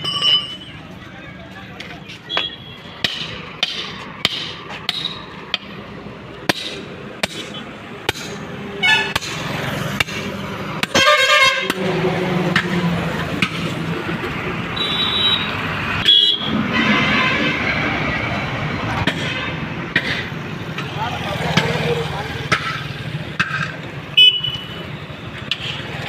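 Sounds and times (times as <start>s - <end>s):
sharp knocks and clanks: 2.4s - 5.8s, 6.4s - 14.4s, 18.9s - 21.8s, 22.4s - 23.9s
horn honk: 10.9s - 11.9s, 14.8s - 17.6s.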